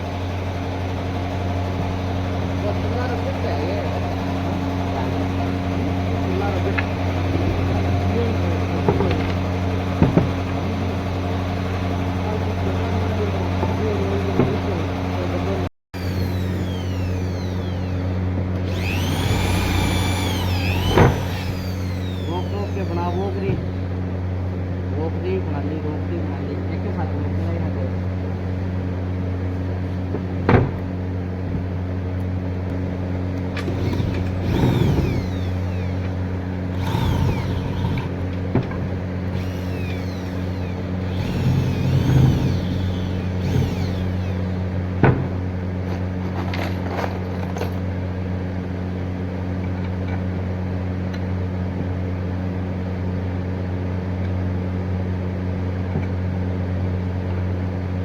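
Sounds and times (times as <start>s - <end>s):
electric motor humming: 16.0s - 23.6s, 33.4s - 38.5s, 39.2s - 44.8s.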